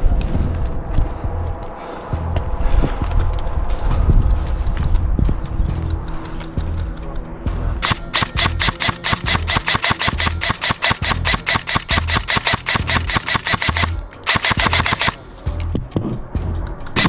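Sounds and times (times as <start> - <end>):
background music with bass beat: 3.8 - 17.0
airsoft rifle rapid fire: 7.8 - 15.3.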